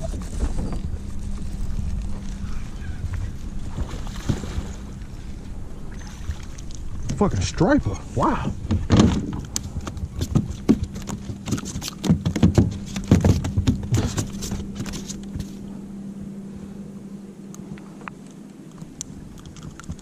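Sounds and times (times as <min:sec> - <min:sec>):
steady low hum: 0:00.0 - 0:20.0
fish thudding against boat hull: 0:08.6 - 0:15.1.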